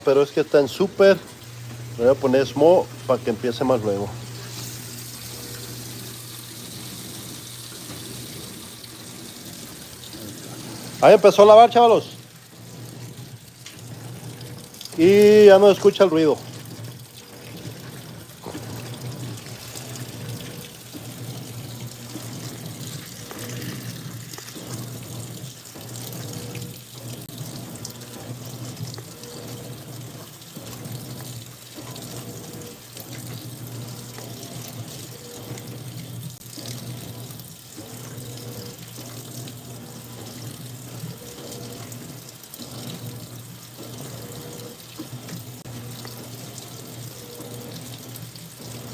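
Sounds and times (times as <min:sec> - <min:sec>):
low motor hum: 0:00.0 - 0:31.4
water swishing in washing machine: 0:00.0 - 0:48.9.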